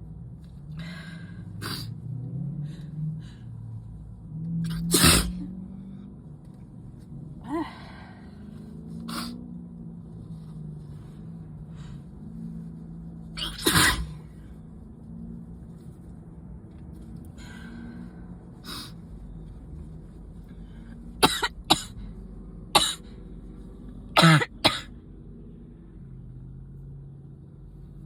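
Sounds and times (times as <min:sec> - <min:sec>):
person sneezing: 0:04.7 - 0:05.4, 0:13.4 - 0:14.2, 0:22.8 - 0:23.0, 0:24.2 - 0:24.9
person coughing: 0:21.2 - 0:21.9, 0:22.8 - 0:23.0, 0:24.2 - 0:24.9.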